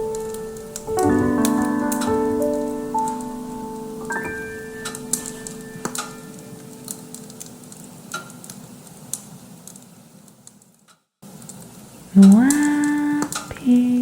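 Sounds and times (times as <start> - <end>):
held piano notes: 0.0 - 8.1
bonfire crackling and popping: 4.8 - 10.7.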